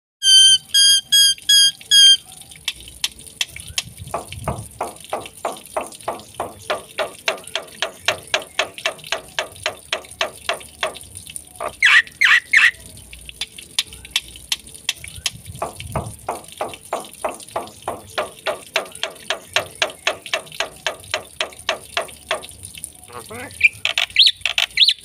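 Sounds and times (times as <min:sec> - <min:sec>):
bird whistles: 0:00.2 - 0:02.2
bird chirps: 0:11.6 - 0:12.8, 0:23.6 - 0:25.0
harsh bird calls: 0:11.6 - 0:12.8.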